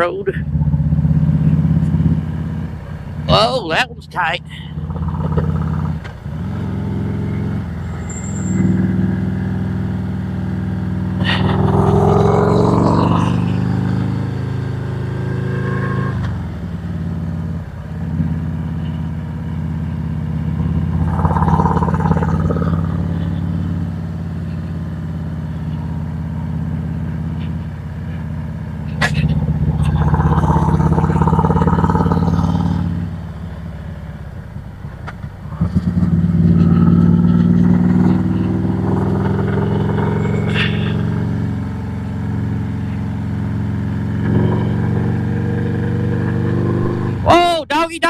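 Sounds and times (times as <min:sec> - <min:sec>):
motorcycle engine accelerating: 0:00.0 - 0:47.4
rush of noise: 0:45.7 - 0:47.8.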